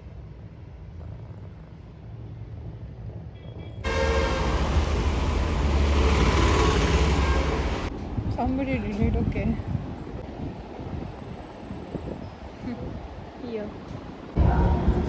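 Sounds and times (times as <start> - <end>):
city traffic hum: 3.8 - 15.0.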